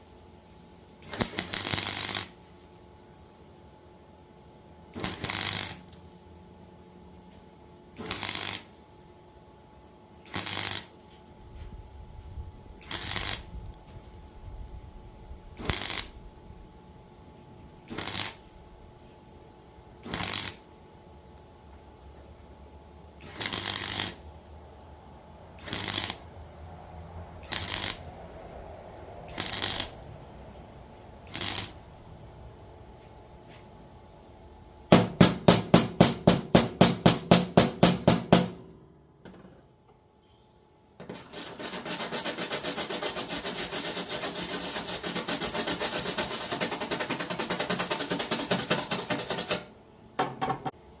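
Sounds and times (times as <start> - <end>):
faint steady hum: 0.0 - 35.0
welding arc bursts: 1.0 - 2.5, 4.9 - 6.0, 8.0 - 8.8, 10.2 - 11.0, 12.8 - 13.5, 15.6 - 16.2, 17.9 - 18.5, 20.0 - 20.7, 23.2 - 24.3, 25.6 - 26.3, 27.4 - 28.2, 29.3 - 30.0, 31.2 - 31.9, 41.1 - 49.7.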